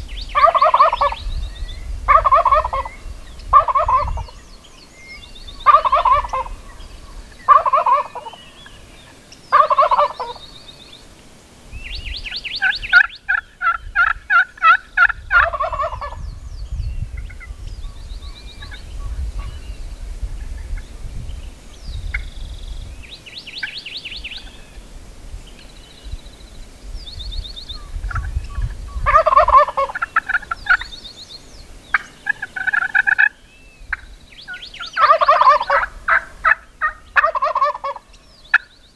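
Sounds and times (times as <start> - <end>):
turkeys gobbling: 0.4 - 1.2, 2.1 - 4.4, 5.6 - 8.8, 9.5 - 10.4, 12.6 - 16.2, 28.1 - 28.3, 29.0 - 30.9, 31.9 - 38.7.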